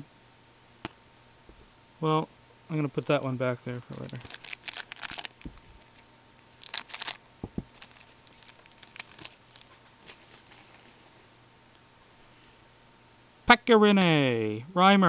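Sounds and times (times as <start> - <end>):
cards ticking and shuffling: 3.0 - 6.0, 6.6 - 11.0
packaging rustling: 3.8 - 6.0, 6.6 - 11.2
soft knocks: 7.4 - 7.7.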